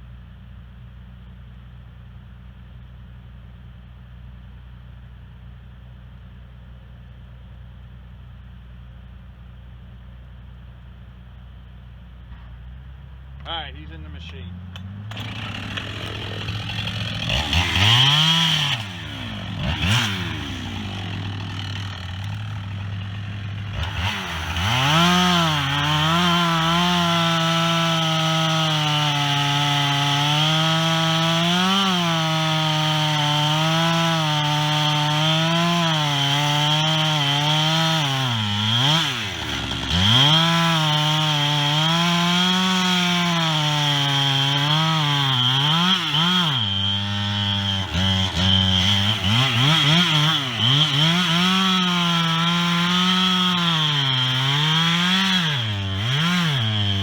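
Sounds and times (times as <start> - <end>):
chainsaw cutting wood: 13.4 - 57.0.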